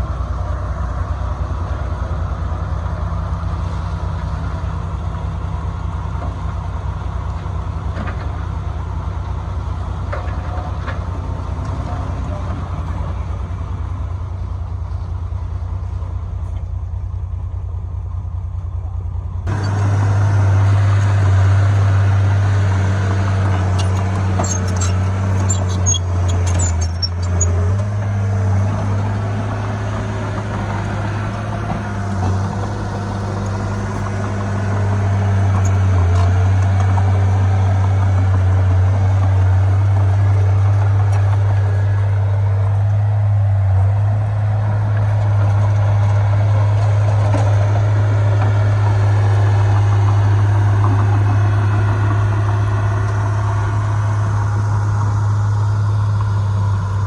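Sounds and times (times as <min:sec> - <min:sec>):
diesel machinery engine droning: 0:00.0 - 0:57.0
light metal clanks: 0:23.0 - 0:27.9.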